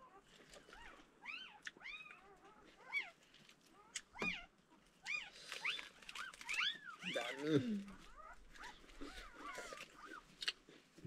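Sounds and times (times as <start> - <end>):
puppies whimpering and squealing: 0.0 - 10.4.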